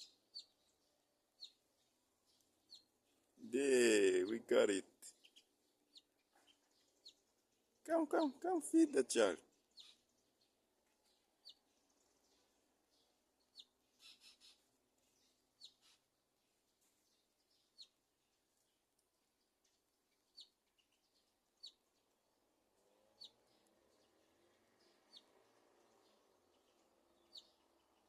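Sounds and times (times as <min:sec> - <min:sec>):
small bird chirping: 0:00.0 - 0:03.4, 0:04.0 - 0:08.4, 0:09.4 - 0:28.0.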